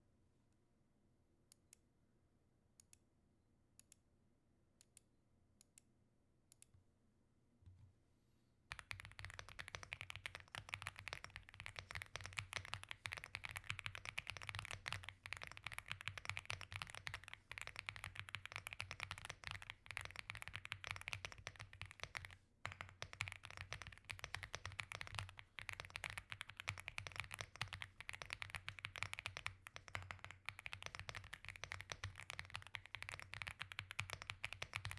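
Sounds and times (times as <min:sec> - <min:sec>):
mechanical keyboard typing: 0:08.7 - 0:34.9.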